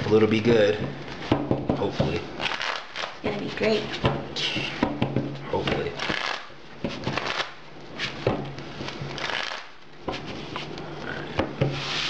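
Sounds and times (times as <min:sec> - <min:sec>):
cards being shuffled: 0:02.4 - 0:04.0, 0:05.8 - 0:10.8.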